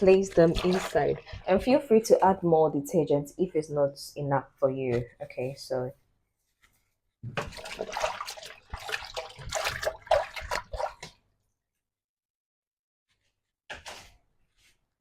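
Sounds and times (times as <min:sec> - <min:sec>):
soapy water sloshing in washer tub: 0:00.0 - 0:02.4, 0:07.3 - 0:11.4.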